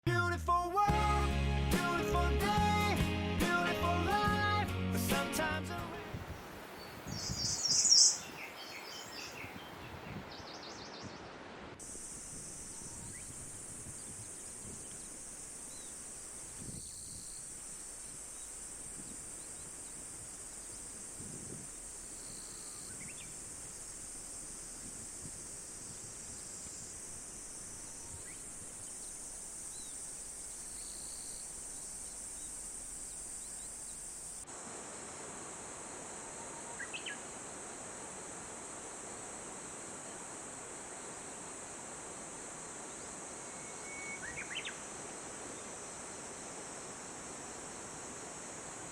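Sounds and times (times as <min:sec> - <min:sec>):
bird chirping: 0:06.8 - 0:11.2
high-pitched insect drone: 0:11.8 - 0:34.4.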